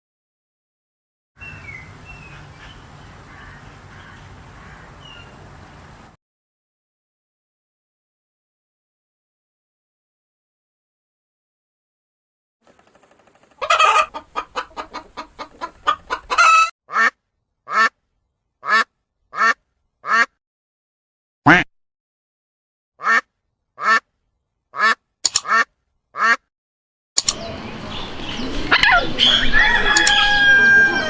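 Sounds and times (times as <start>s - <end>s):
duck quacking: 13.6s - 18.0s, 18.6s - 20.4s, 21.5s - 21.7s, 23.0s - 24.1s, 24.8s - 26.4s.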